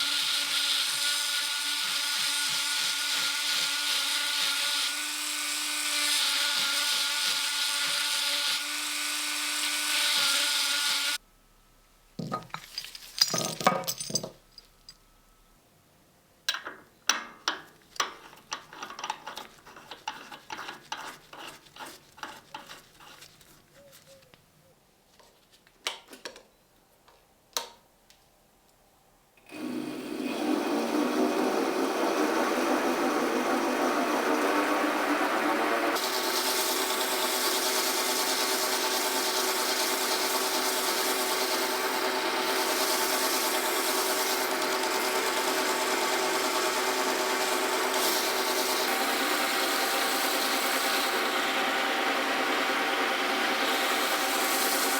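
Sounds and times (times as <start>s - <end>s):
electric power tool whining: 0.0s - 11.2s, 29.5s - 54.9s
rough noisy power tool: 0.0s - 11.2s, 29.5s - 54.9s.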